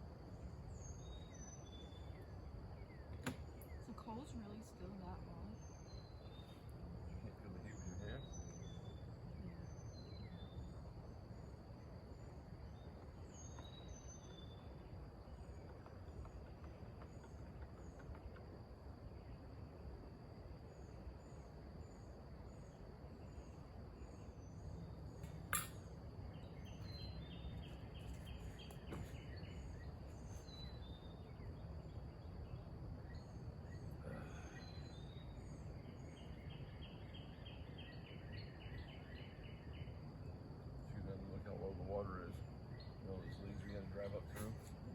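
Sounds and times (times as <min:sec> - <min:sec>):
high bird chirp: 0:02.9 - 0:10.7, 0:25.5 - 0:31.5.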